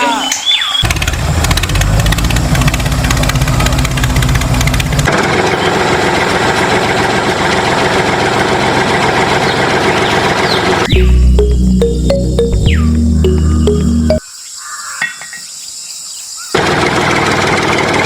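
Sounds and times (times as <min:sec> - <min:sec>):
engine running: 0:00.8 - 0:14.2.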